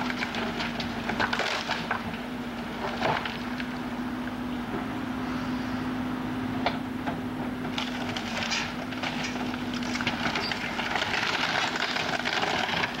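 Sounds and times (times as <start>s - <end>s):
wood splintering and cracking: 0.0s - 2.2s, 7.8s - 13.0s
steady low hum: 2.2s - 7.8s.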